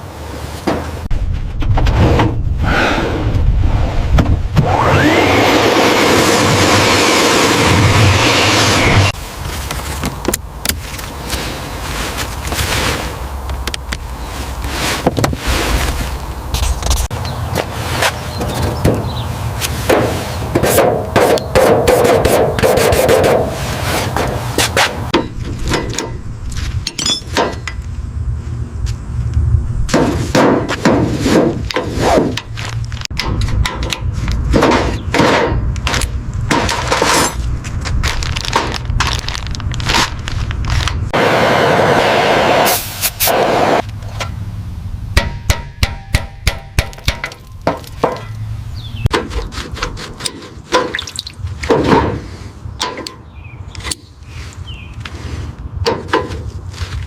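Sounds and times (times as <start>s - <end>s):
steady low hum: 22.4s - 34.6s
hammer striking metal: 25.1s - 26.2s, 45.2s - 48.4s
hand tools knocking on metal: 45.2s - 48.4s.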